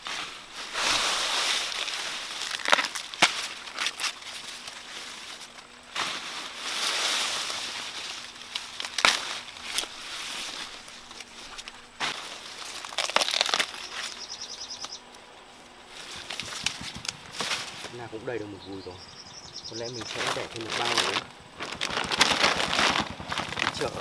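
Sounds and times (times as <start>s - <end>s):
corn leaves rustling: 0.0s - 24.0s
corn ears snapping: 1.5s - 24.0s
high chirps: 16.6s - 20.2s.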